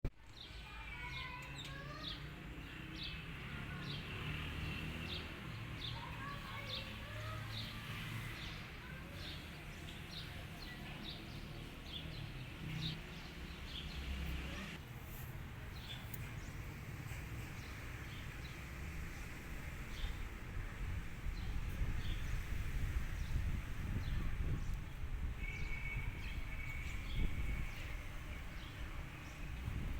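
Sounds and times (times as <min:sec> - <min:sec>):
small birds chirping: 0:00.2 - 0:29.9.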